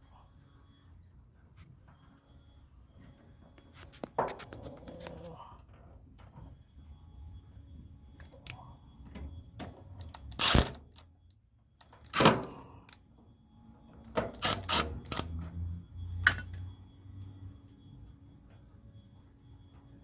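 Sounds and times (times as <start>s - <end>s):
hand tools clicking and clattering: 14.1s - 15.4s.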